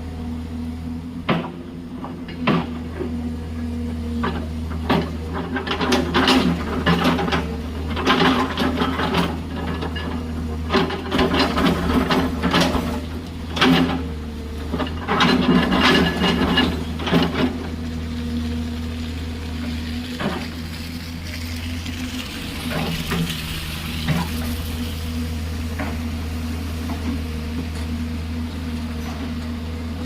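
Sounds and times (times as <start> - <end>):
excavator diesel engine running: 0.0 - 30.0.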